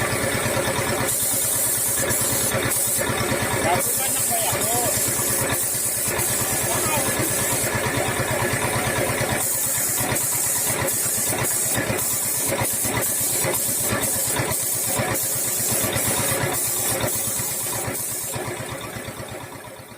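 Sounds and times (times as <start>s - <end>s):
small engine idling: 0.0s - 19.9s.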